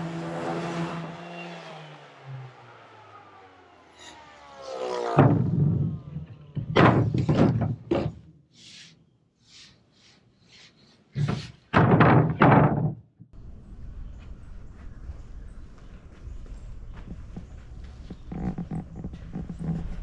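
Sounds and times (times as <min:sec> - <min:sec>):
heavy thunks and knocks: 0:05.2 - 0:08.2, 0:11.2 - 0:13.1.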